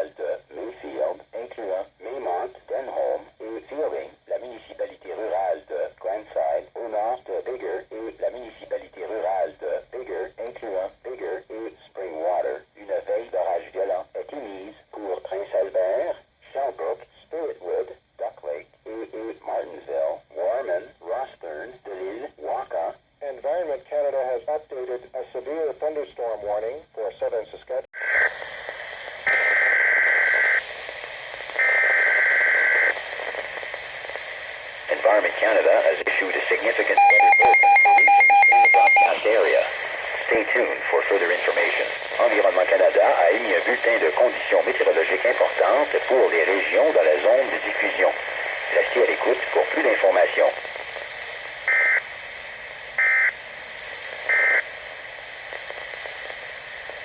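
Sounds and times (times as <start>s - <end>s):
faint radio hiss: 0.0s - 57.0s
digital data tone bursts: 37.0s - 39.1s.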